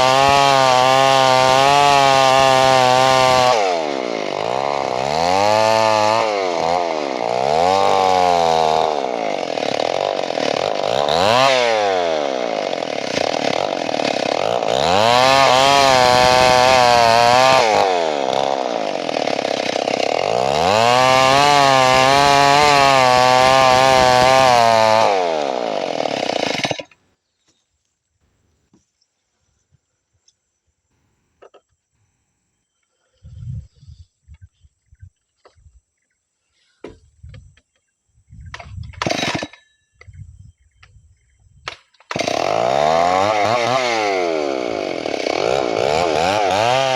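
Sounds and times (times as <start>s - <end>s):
chainsaw revving and cutting wood: 0.0s - 27.0s, 39.0s - 39.6s, 42.0s - 46.9s.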